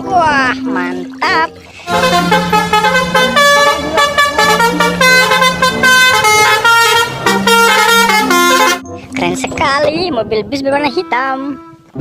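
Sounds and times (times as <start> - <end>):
multi-tone bus air horn tune: 1.8 - 8.9.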